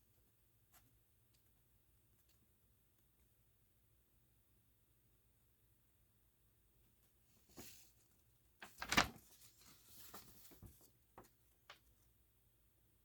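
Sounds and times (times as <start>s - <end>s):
paper rustling: 7.4s - 12.1s.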